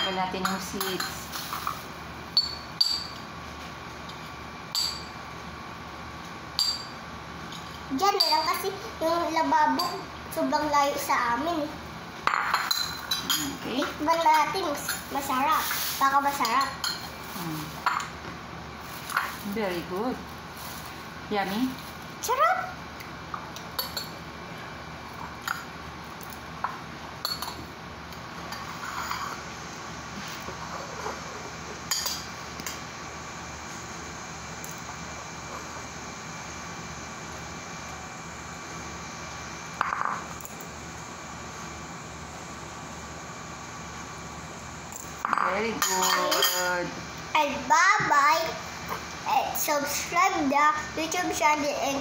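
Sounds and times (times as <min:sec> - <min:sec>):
spoon clinking against glass: 0:02.4 - 0:03.2, 0:06.6 - 0:06.9.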